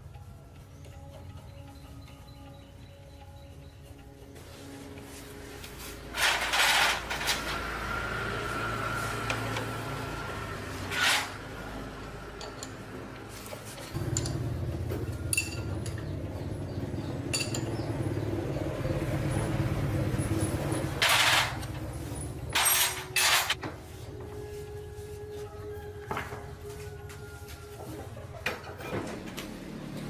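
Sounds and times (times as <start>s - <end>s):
metal tools clinking and clattering: 12.0s - 14.4s, 15.3s - 16.0s, 17.3s - 17.8s, 21.0s - 23.6s.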